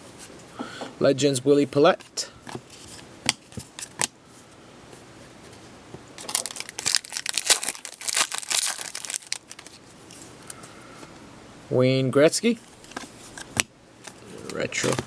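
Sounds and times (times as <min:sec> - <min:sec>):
packaging crinkling and rustling: 0:06.2 - 0:10.3.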